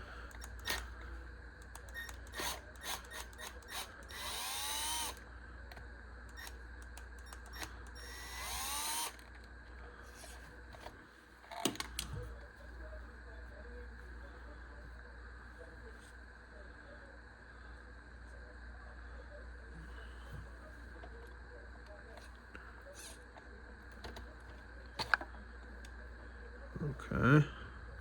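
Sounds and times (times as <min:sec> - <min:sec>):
power driver whining: 0:00.0 - 0:09.5
tool handling clicks: 0:10.8 - 0:12.1.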